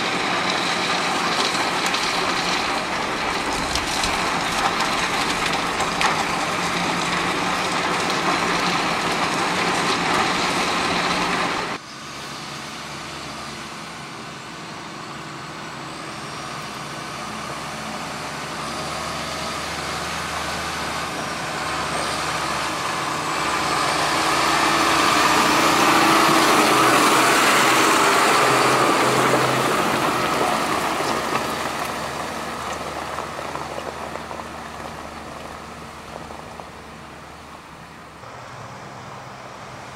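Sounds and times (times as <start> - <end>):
heavy vehicle passing: 16.2 - 39.9
loud dense noise: 19.6 - 33.4.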